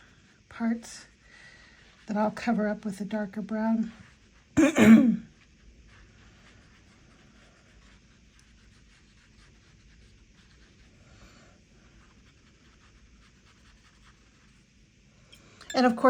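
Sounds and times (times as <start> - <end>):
brush scratching on paper: 3.8 - 4.6, 5.3 - 14.8.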